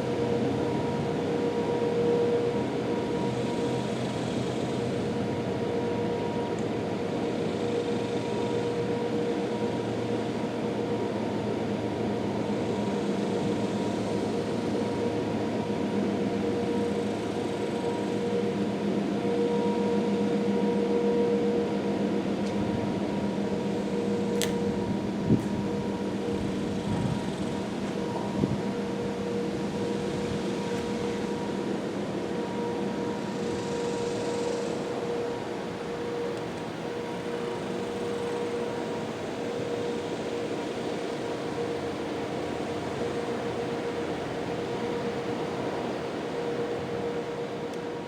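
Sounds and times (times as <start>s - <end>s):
distant warning siren steady tone: 0.0s - 48.0s
brief click: 24.4s - 24.6s.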